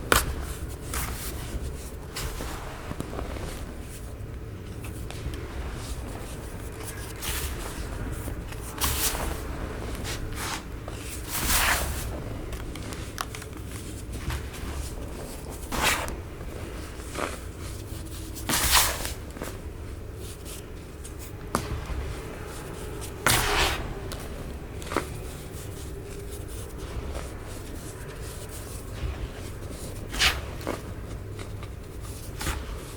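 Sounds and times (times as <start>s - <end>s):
baking soda crunching: 0.0s - 32.9s
steady low hum: 0.0s - 32.9s.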